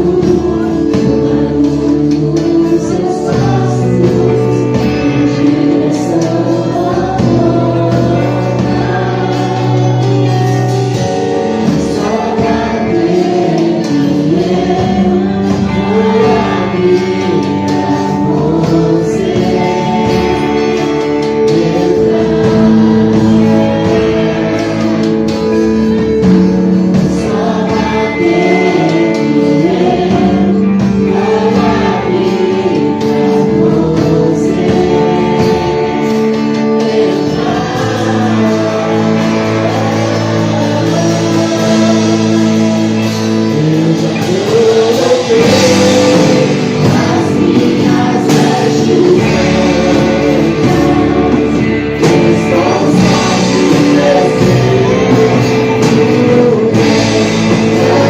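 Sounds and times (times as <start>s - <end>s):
full band playing: 0.0s - 58.0s
voices singing worship song: 0.0s - 58.0s.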